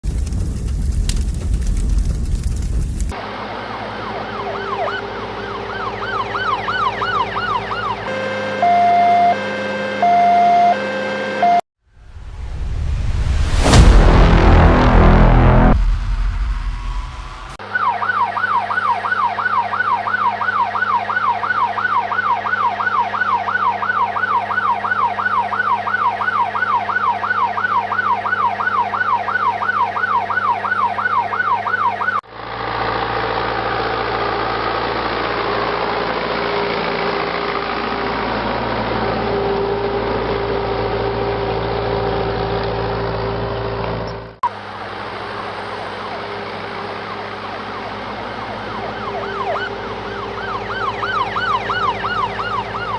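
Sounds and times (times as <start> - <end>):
engine running with low hum: 0.0 - 11.3, 12.0 - 31.6, 32.3 - 52.9
siren yelping: 3.2 - 11.6, 16.5 - 32.2, 45.7 - 52.9.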